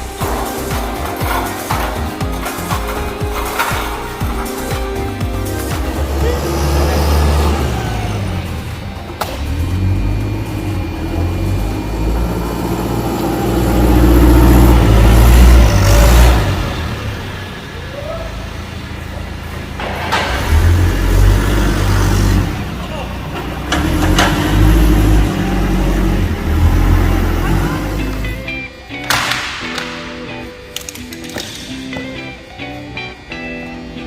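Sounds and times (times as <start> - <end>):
background voices: 0.0 - 13.9
heavy machinery rumbling: 0.0 - 28.6.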